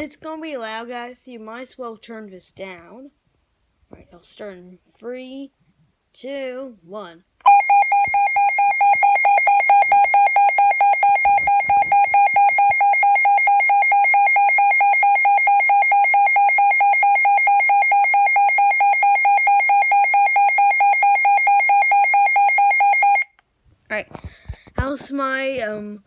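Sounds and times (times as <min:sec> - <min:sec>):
weather radio alarm beeping: 0:07.4 - 0:23.3.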